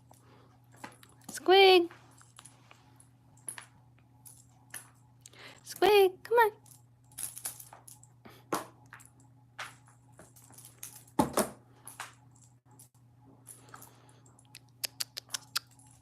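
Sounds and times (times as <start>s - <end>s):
kitten playing clicks and rattles: 6.5s - 16.0s.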